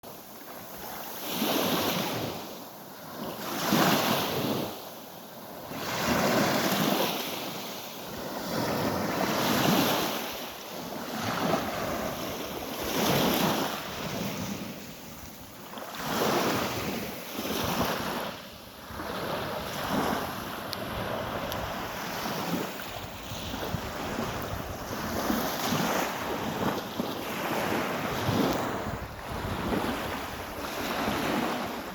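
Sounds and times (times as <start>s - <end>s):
sea waves washing on shore: 0.1s - 31.9s
wind buffeting microphone: 18.8s - 31.9s.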